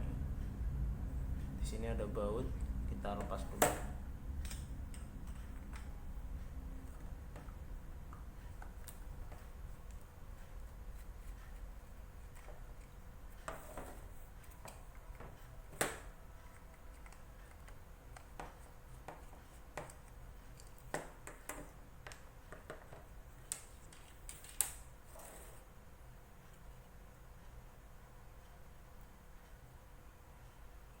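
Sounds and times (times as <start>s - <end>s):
faint steady hum: 0.0s - 31.0s
screwdriver and small parts clicking: 19.8s - 20.9s.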